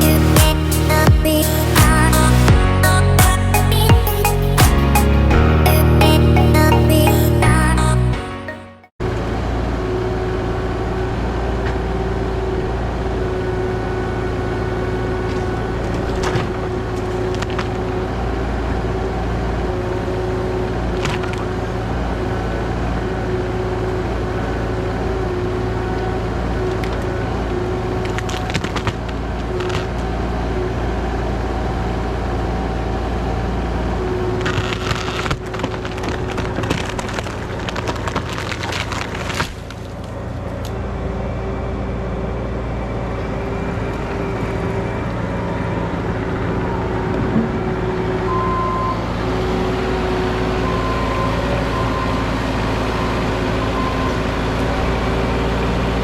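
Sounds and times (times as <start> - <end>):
diesel engine running under load: 9.0 - 56.0
wood cracking and splintering: 28.0 - 30.0, 34.4 - 40.3.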